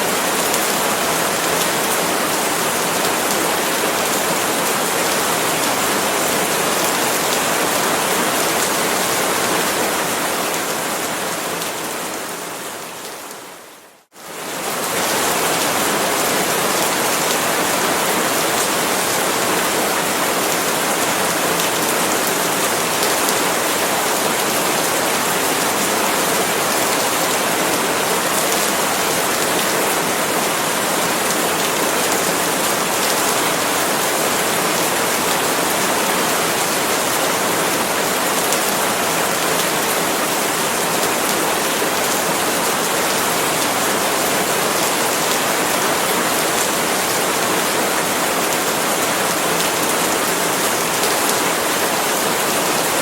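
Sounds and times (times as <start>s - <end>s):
rain on palm leaves: 0.0s - 53.0s.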